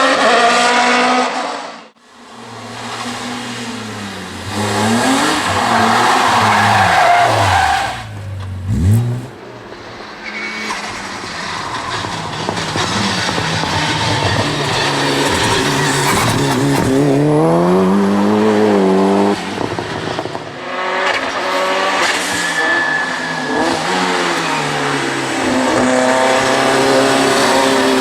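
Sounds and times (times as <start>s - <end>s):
race car engine revving: 2.7s - 9.5s.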